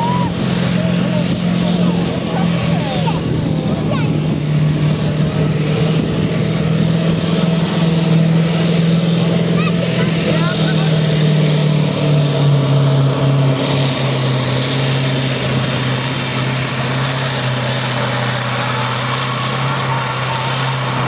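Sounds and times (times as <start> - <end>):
tractor diesel engine under heavy load: 0.0 - 21.0.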